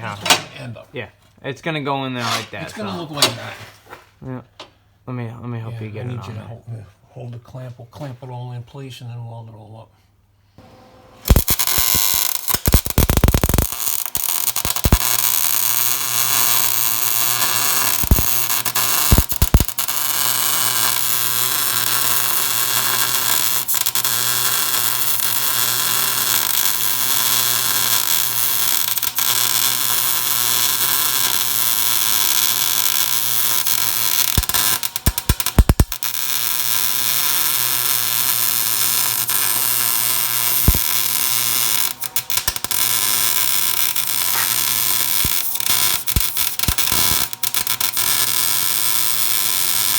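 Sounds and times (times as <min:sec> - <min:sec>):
arc welding crackling sizzle: 0:11.2 - 0:49.9
sharp welding pops: 0:11.2 - 0:49.9.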